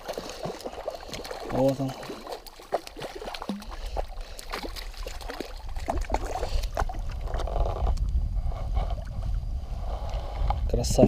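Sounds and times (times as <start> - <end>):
water splashing: 0.0 - 7.7
wind rumble on microphone: 3.5 - 11.0.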